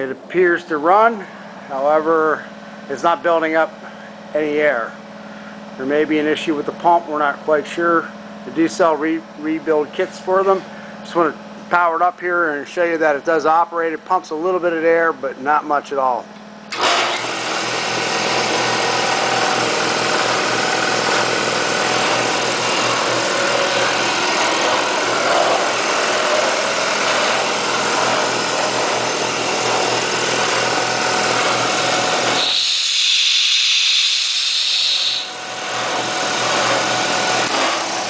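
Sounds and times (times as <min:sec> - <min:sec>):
air compressor running: 0:00.0 - 0:13.7, 0:16.2 - 0:38.0
loud air hiss: 0:32.4 - 0:35.3.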